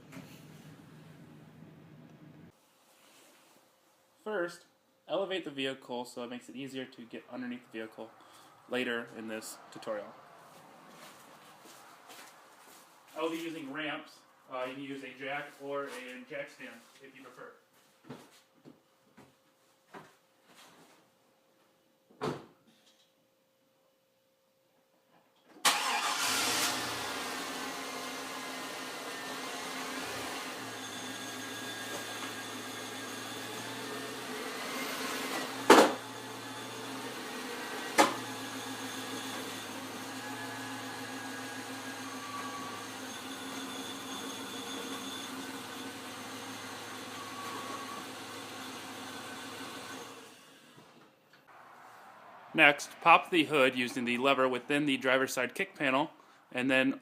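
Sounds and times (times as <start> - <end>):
car engine starting and running: 25.6 - 30.8, 33.4 - 43.4.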